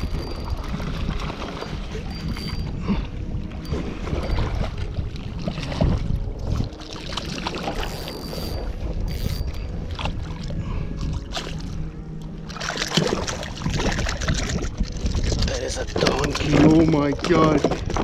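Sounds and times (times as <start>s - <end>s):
water moving around kayak: 0.0s - 18.0s
wind buffeting microphone: 0.0s - 18.0s
splashes and knocks: 12.5s - 15.4s.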